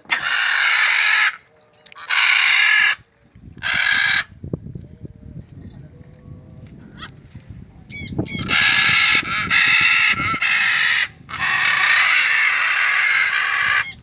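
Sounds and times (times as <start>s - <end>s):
cockatoo screeching: 0.1s - 1.4s, 2.0s - 3.0s, 3.6s - 4.3s, 7.9s - 14.0s.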